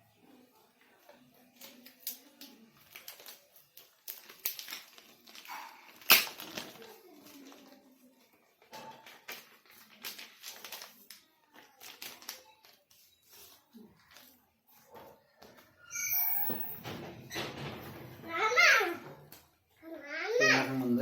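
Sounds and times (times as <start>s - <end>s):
packaging crinkling: 1.6s - 14.4s.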